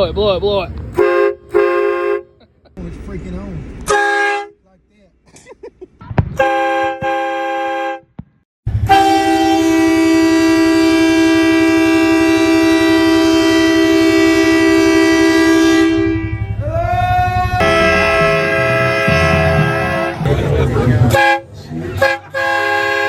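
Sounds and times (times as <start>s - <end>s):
train horn chord blasts: 8.7s - 16.6s, 17.6s - 20.2s.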